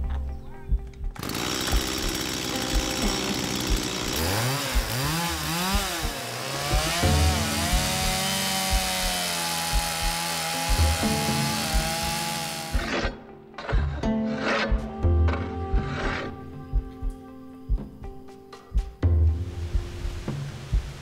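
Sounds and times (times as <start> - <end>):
music: 0.0 - 21.0
small engine revving: 1.2 - 14.9.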